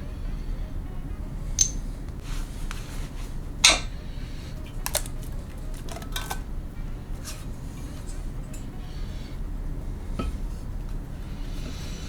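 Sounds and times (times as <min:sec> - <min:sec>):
metal parts clinking and knocking: 0:01.6 - 0:01.9, 0:03.6 - 0:03.9, 0:04.8 - 0:06.4.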